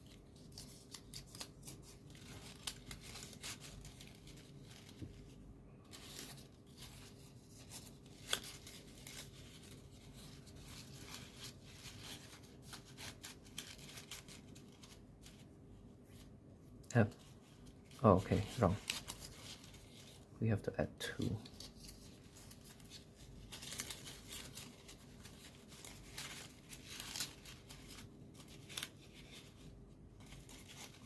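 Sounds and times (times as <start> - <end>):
paper rustling and crinkling: 0.0 - 20.4, 21.0 - 31.0.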